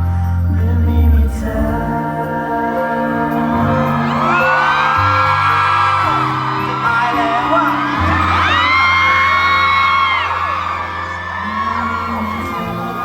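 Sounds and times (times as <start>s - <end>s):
live band playing pop song: 0.0s - 13.0s
crowd screaming and cheering: 3.0s - 13.0s.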